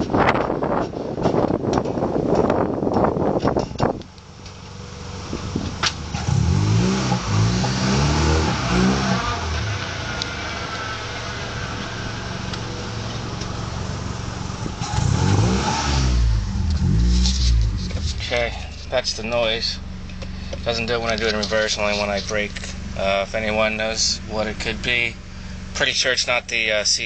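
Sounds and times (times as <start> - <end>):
wind noise on microphone: 0.0 - 4.1, 5.2 - 5.9
car engine accelerating: 0.0 - 27.0.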